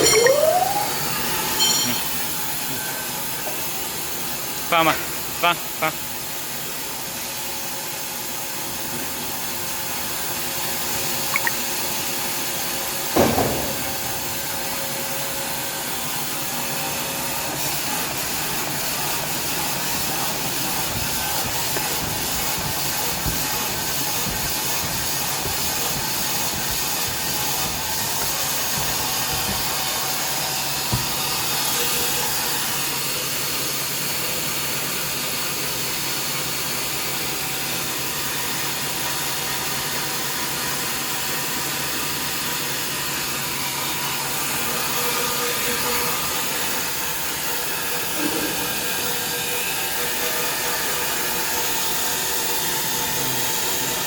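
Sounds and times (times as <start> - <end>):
band saw machine running: 13.0 - 33.2.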